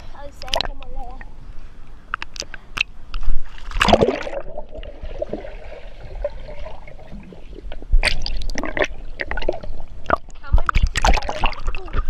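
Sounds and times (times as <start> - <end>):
water sloshing and gurgling: 0.0 - 12.0
water splash: 3.3 - 12.0.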